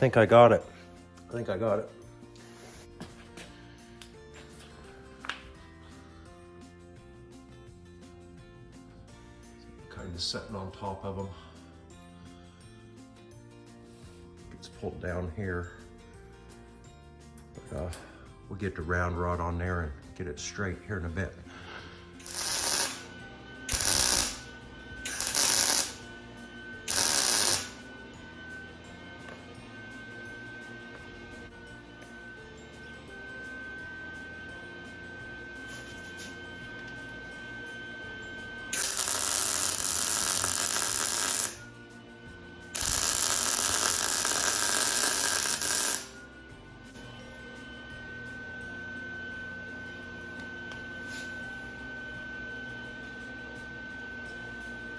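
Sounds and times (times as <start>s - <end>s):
arc welder crackling: 22.2s - 26.1s, 26.8s - 27.9s, 38.7s - 41.7s, 42.8s - 46.2s.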